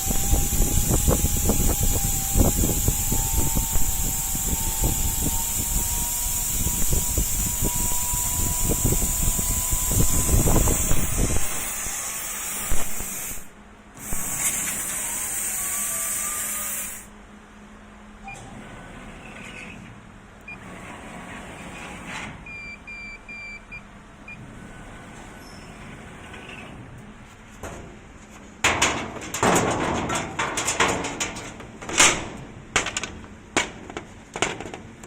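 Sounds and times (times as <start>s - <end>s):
laser cutting machine hissing: 0.0s - 11.6s, 14.1s - 14.7s
motor whine rising in pitch: 0.0s - 11.6s.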